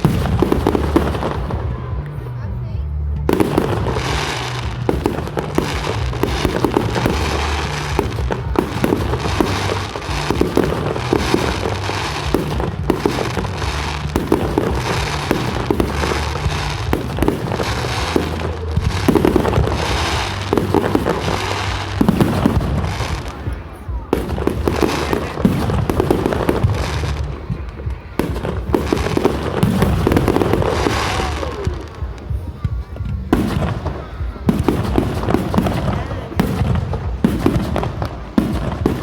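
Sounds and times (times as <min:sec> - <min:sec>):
fireworks crackling and banging: 0:00.0 - 0:39.0.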